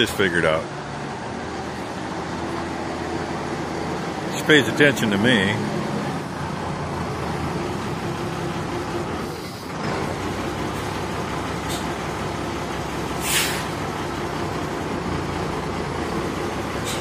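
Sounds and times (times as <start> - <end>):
truck engine running: 0.0 - 17.0
short hiss: 13.2 - 13.8.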